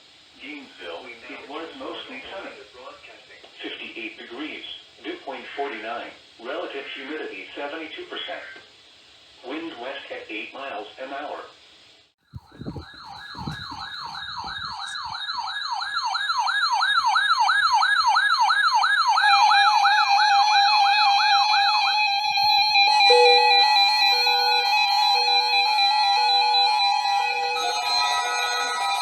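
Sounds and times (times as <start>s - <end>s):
steady alarm tones: 12.4s - 29.0s
warbling siren: 12.4s - 29.0s
pulsing beeps: 12.6s - 16.0s, 22.4s - 29.0s.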